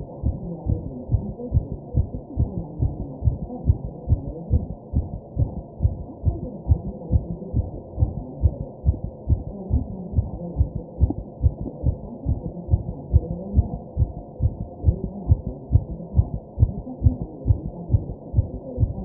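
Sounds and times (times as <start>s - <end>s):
fast heartbeat: 0.0s - 19.0s.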